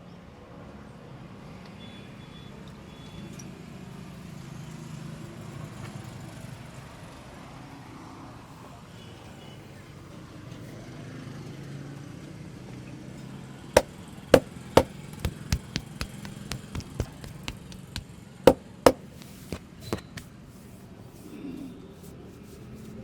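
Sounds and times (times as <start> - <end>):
hands slapping a back: 13.8 - 20.3.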